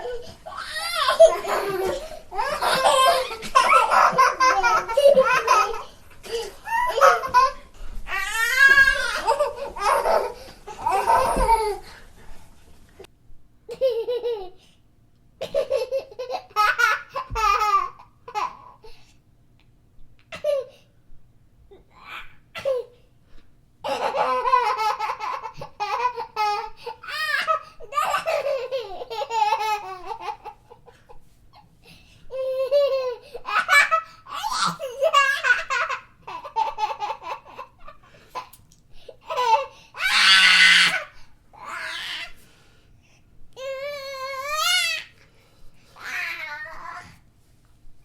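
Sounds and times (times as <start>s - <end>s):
baby laughing and giggling: 0.0s - 11.8s, 23.9s - 31.1s, 32.3s - 38.6s.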